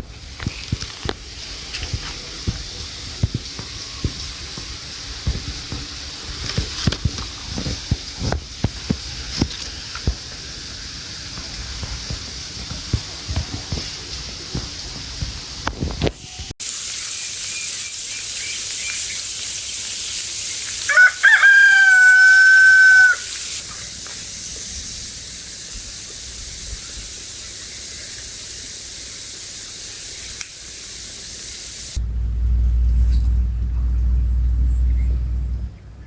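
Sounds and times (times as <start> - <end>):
steady high hiss: 0.0 - 32.0
rooster crowing: 20.9 - 23.4
low rumble: 32.0 - 36.0.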